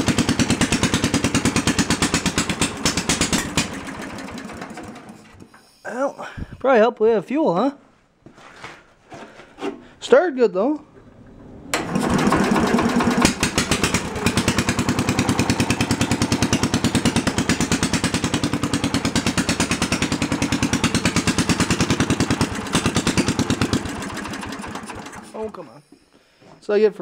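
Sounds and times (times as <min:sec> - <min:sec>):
small engine running: 0:00.0 - 0:05.5, 0:11.1 - 0:25.6.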